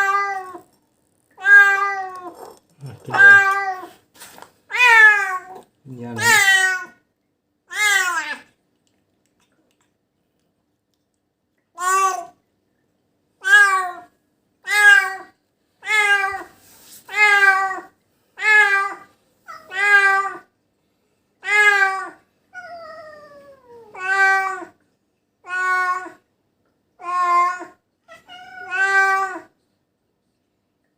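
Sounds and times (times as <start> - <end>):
cat meowing: 0.0 - 0.6, 1.4 - 3.9, 4.7 - 7.0, 7.7 - 8.5, 11.8 - 12.4, 13.4 - 14.1, 17.1 - 20.4, 21.4 - 24.7, 25.4 - 26.2, 27.0 - 29.5.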